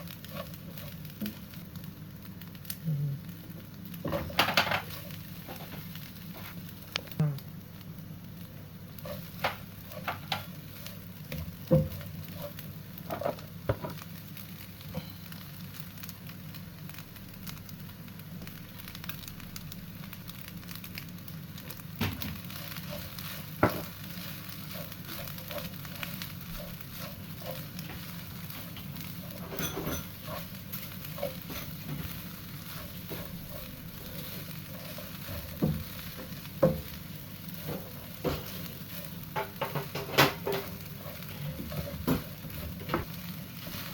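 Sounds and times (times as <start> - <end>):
rice sizzling in a hot pan: 0.0 - 43.9
spatula scraping and knocking pan: 4.0 - 6.6, 9.0 - 14.0, 21.7 - 43.9.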